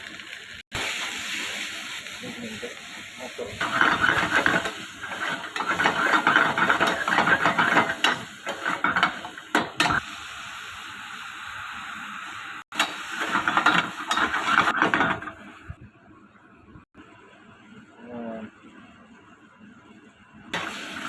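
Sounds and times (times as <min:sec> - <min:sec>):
food sizzling: 0:00.0 - 0:15.7, 0:20.6 - 0:21.0
spatula scraping a pan: 0:03.6 - 0:10.0.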